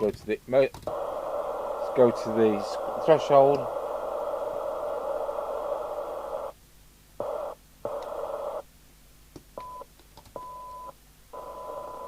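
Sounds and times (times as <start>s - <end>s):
radio speaker hiss: 0.0s - 6.6s, 7.2s - 8.7s, 11.4s - 12.0s
steady high radio tone: 0.9s - 6.6s, 7.2s - 8.6s, 11.4s - 12.0s.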